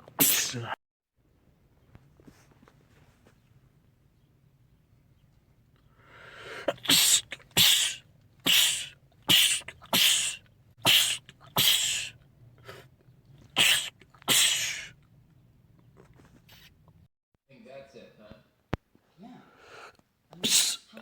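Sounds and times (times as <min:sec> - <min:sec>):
man sneezing: 0:00.2 - 0:00.8, 0:06.6 - 0:12.2, 0:13.6 - 0:14.9, 0:20.4 - 0:21.0.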